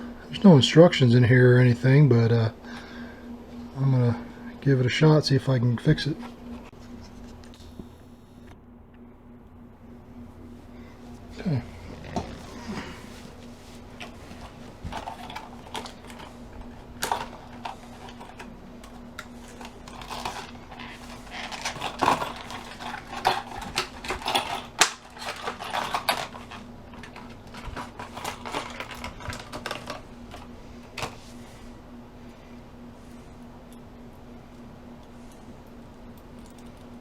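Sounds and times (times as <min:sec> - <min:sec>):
faint steady hum: 0:00.0 - 0:37.0
clicks and rattles of small parts: 0:14.0 - 0:31.2.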